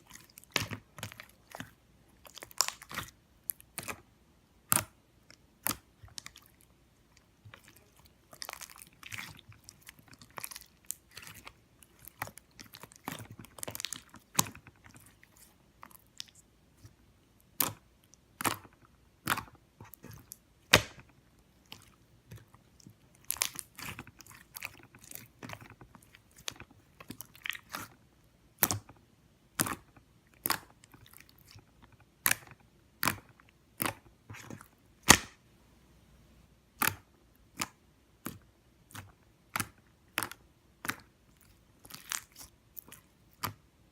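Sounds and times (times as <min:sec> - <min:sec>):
slime popping and crackling: 0:00.1 - 0:04.0, 0:21.7 - 0:27.9, 0:28.6 - 0:35.4.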